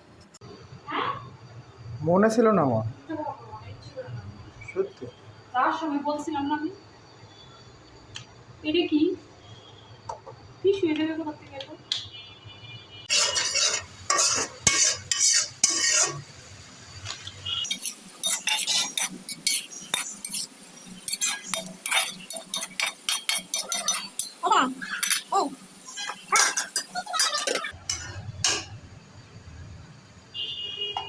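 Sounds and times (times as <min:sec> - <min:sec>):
metal utensils clinking on dishes: 0:13.1 - 0:16.2, 0:17.7 - 0:28.8.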